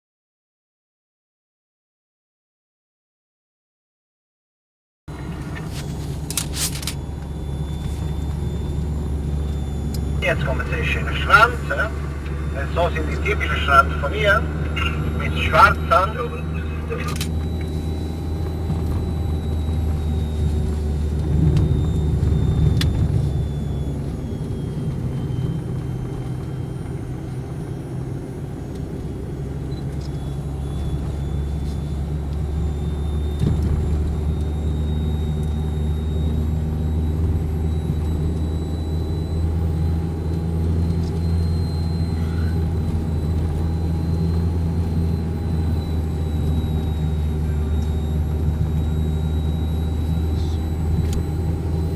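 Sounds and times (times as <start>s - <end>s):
road rumble: 5.1s - 24.5s
car engine: 5.1s - 25.0s.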